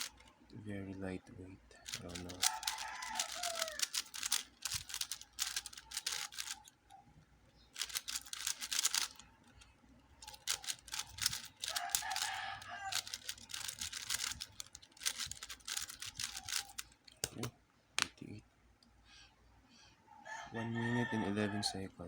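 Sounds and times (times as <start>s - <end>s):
speed cube layer turns clicking: 0.0s - 0.4s, 1.8s - 6.8s, 7.7s - 17.5s.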